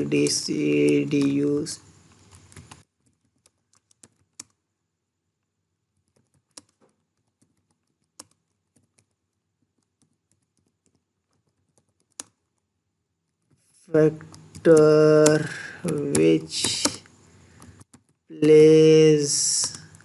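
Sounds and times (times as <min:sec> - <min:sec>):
slow typing on keyboard: 0:02.0 - 0:04.6, 0:05.9 - 0:18.3.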